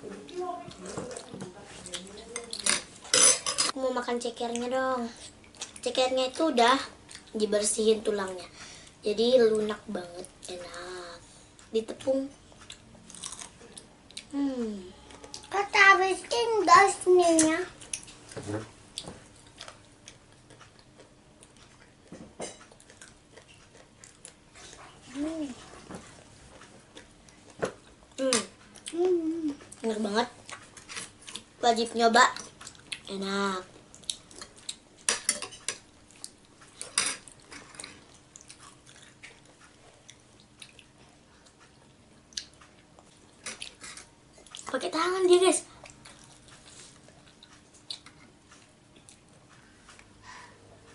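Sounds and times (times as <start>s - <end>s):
faint chewing of crispy food: 12.5s - 14.4s, 17.8s - 31.5s, 32.3s - 33.1s, 35.8s - 44.8s, 45.6s - 50.9s
cutlery clinking against bowl: 35.1s - 35.8s.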